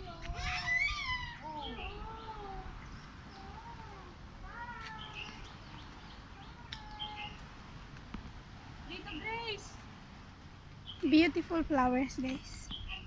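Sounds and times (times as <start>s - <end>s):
parrot whining calls: 0.4s - 1.4s.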